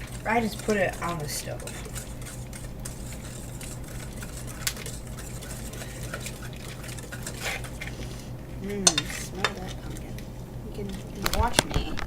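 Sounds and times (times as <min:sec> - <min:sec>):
steady low hum: 0:00.0 - 0:12.0
utensils and dishes clinking: 0:08.8 - 0:10.0.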